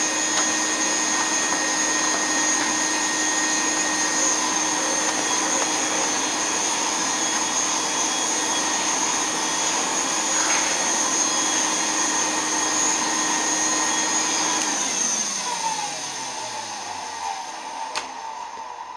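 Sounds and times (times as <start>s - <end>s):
vacuum cleaner running: 0.0s - 18.9s.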